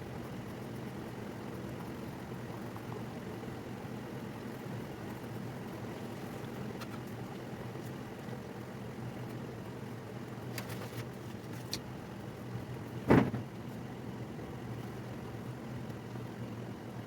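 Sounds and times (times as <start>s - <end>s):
low hum and hiss: 0.0s - 17.0s
dull thump: 13.1s - 13.5s.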